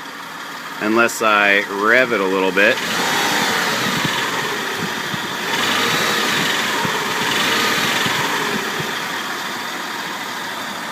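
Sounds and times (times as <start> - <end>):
car engine idling: 0.0 - 10.9.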